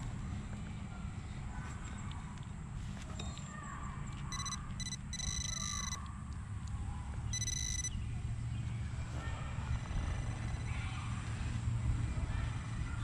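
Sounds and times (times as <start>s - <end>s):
metal detector beeping: 4.3s - 6.0s, 7.3s - 8.0s, 9.7s - 10.8s.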